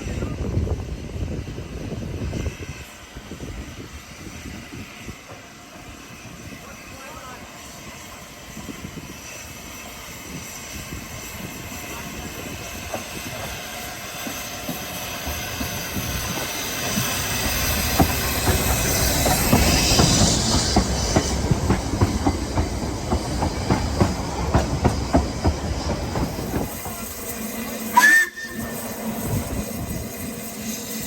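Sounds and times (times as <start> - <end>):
train hissing: 0.0 - 31.0
train wheels clicking over rail joints: 8.0 - 31.0
high-pitched squeal: 13.3 - 31.0.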